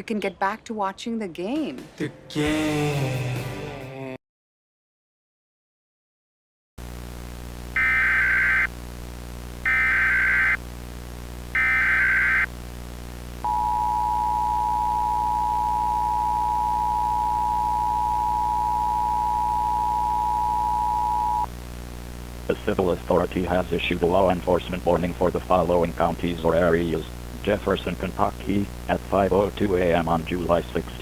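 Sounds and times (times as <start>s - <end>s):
digital header screech: 7.8s - 8.7s, 9.7s - 10.6s, 11.6s - 12.5s
two-tone attention signal: 13.4s - 21.5s.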